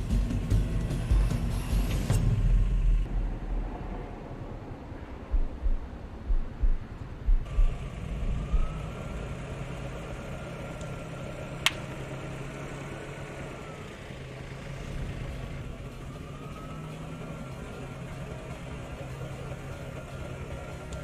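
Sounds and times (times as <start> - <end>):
low thumps: 2.2 - 9.0
car engine running: 5.3 - 21.0
sharp crack: 11.6 - 12.0.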